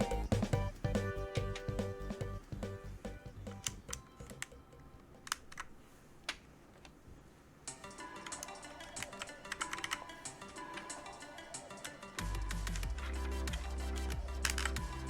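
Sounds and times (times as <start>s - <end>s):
plastic keycaps clicking: 8.2s - 10.1s.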